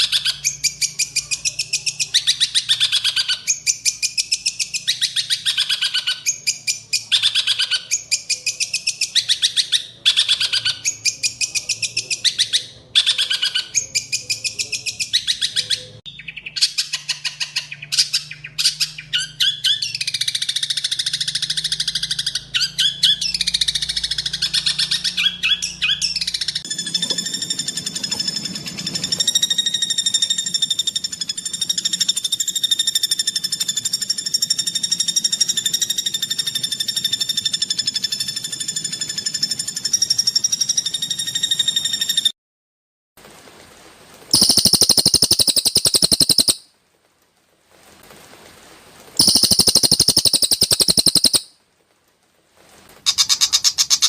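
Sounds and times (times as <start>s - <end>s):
bird buzzing trill: 44.3s - 46.6s, 49.2s - 51.5s
bird singing harsh high notes: 44.3s - 46.6s, 49.2s - 51.5s.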